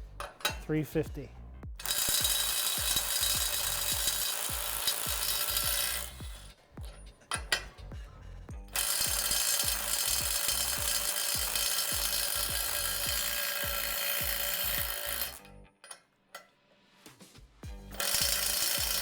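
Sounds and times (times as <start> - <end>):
impact driver hammering: 1.8 - 15.4, 17.9 - 19.0.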